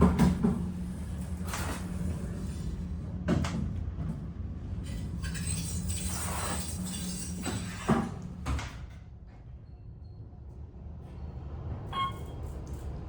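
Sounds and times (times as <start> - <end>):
elevator doors sliding: 0.0 - 3.8, 4.7 - 8.6, 11.3 - 13.0
elevator hum: 10.6 - 13.0.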